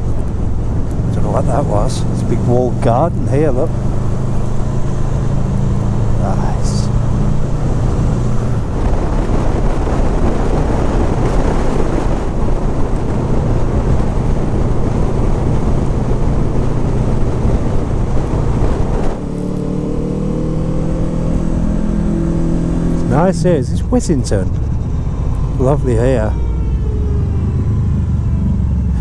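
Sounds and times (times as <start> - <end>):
wind and road noise roaring: 0.0 - 29.0
motorcycle engine note: 15.9 - 29.0.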